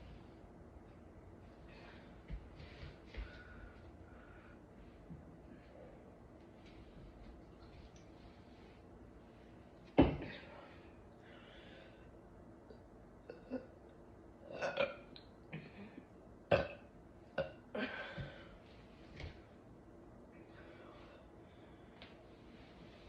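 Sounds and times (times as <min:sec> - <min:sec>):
woman burping: 0:16.5 - 0:18.1.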